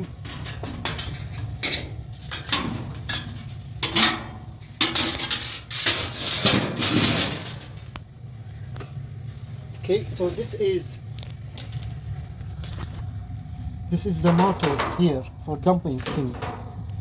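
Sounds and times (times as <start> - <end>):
metal tools clinking and rattling: 0.0 - 7.8.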